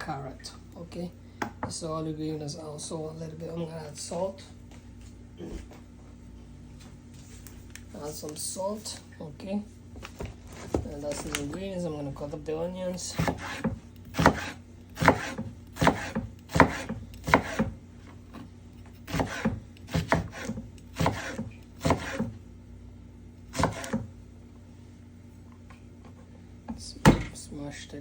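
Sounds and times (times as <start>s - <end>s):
knife chopping on cutting board: 12.9s - 22.4s, 23.5s - 24.1s.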